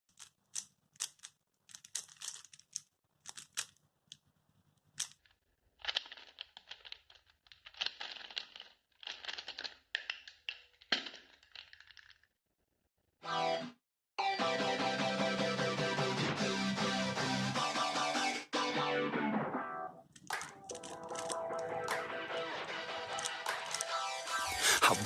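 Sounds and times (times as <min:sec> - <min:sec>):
puzzle cube clacking turns: 0:00.1 - 0:12.3, 0:20.0 - 0:22.0, 0:23.1 - 0:25.0.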